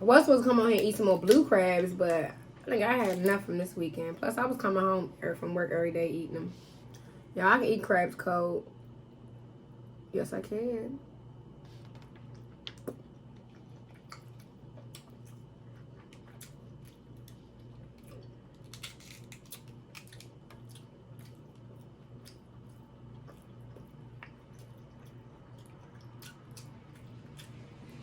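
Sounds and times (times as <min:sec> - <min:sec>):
faint low hum: 0:00.0 - 0:28.0
chewing with wet clicks: 0:11.8 - 0:28.0.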